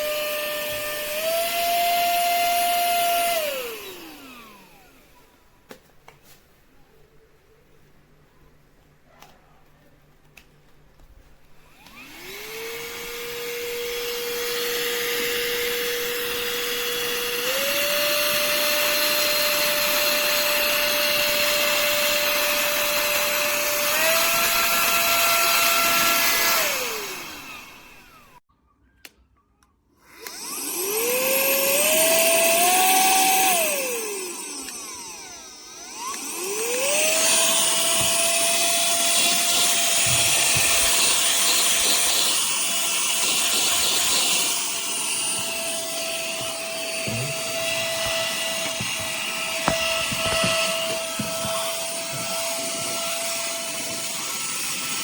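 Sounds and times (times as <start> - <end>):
handheld vacuum cleaner whine: 0.0 - 5.5, 11.6 - 28.4, 30.0 - 55.0
small knocks: 46.3 - 52.4.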